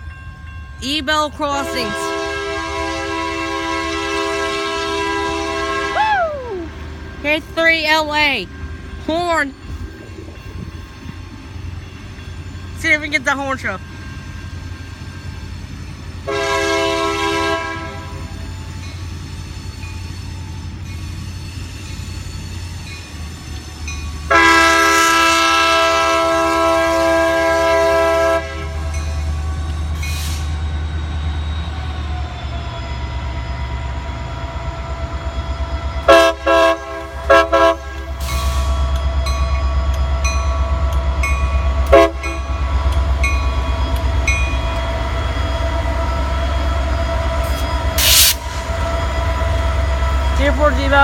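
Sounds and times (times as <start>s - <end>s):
diesel locomotives rumbling: 0.0s - 51.0s
train air horn blasts: 1.6s - 6.2s, 16.2s - 18.4s, 24.3s - 29.0s, 36.0s - 38.8s, 41.8s - 42.5s, 47.4s - 50.0s.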